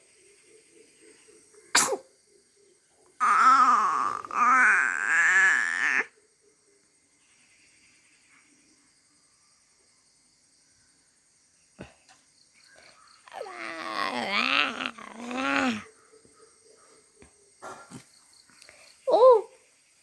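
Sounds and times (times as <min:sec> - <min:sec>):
loud wavering cry: 0:03.2 - 0:06.1, 0:13.3 - 0:15.9.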